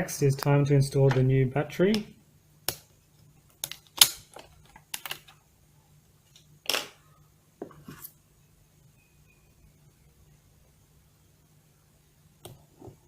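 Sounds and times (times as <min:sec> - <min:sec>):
faint low hum: 0:04.2 - 0:13.0.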